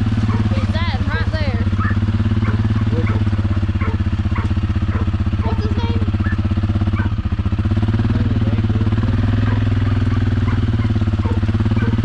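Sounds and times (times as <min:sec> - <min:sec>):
atv engine running: 0:00.0 - 0:12.0.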